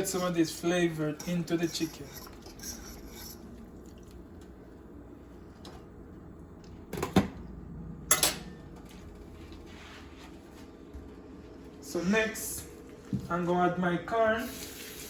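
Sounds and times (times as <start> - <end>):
faint background hum: 0.0 - 15.0
kitchenware clattering: 8.1 - 8.6.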